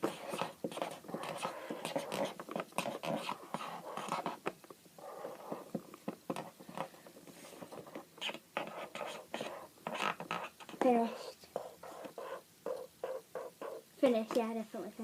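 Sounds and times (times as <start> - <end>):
pens scribbling on paper: 0.0 - 13.8.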